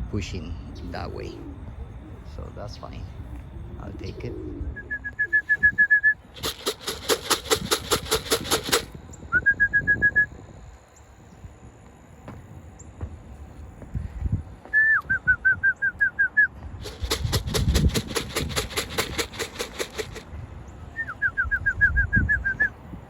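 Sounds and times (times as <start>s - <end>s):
quick high trilled whistling: 4.8s - 10.4s
loud even rattle: 6.4s - 9.0s, 16.8s - 20.3s.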